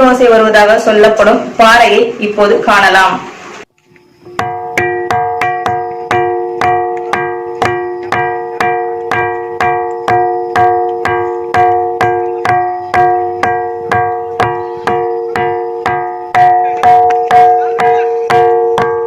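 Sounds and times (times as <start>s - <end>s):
ringing rock struck: 4.3s - 19.0s.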